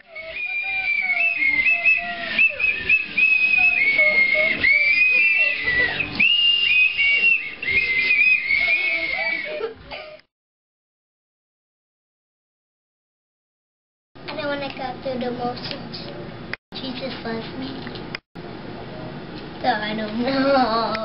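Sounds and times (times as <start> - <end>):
children blowing toy whistles: 0.0 - 9.6.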